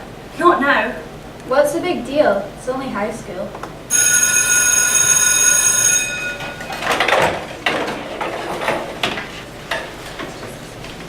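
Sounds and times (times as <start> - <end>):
school bell ringing: 3.9 - 7.0
knocks and clatter of objects moved: 6.2 - 11.0.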